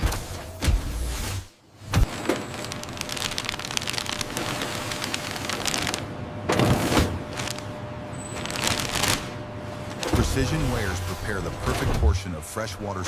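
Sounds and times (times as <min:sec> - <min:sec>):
packaging machinery clattering: 0:01.9 - 0:12.2.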